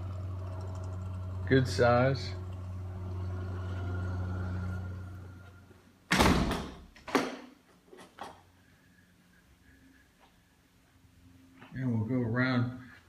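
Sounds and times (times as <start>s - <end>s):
low hum: 0.0s - 6.1s
door shutting with thud: 6.1s - 7.3s.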